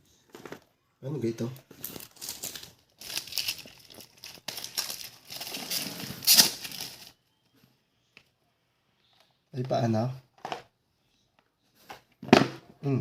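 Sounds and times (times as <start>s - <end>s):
packaging crinkling and tearing: 1.7s - 7.2s.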